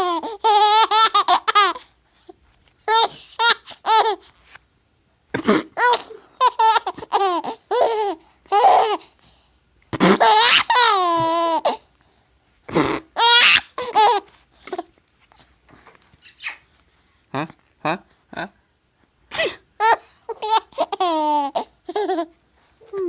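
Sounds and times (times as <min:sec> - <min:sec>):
baby laughing: 0:00.0 - 0:01.9, 0:02.9 - 0:04.2, 0:05.4 - 0:09.1, 0:10.0 - 0:11.8, 0:13.1 - 0:14.9, 0:19.8 - 0:23.0.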